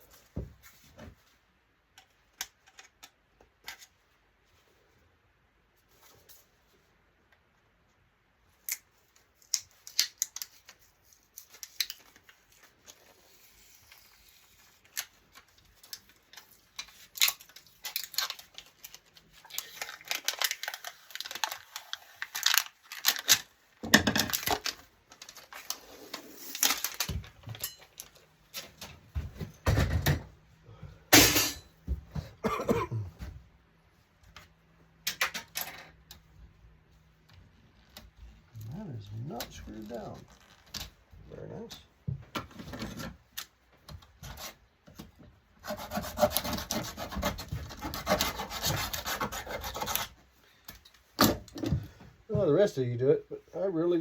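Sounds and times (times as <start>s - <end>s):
parts clattering with heavy knocks: 26.9s - 33.5s.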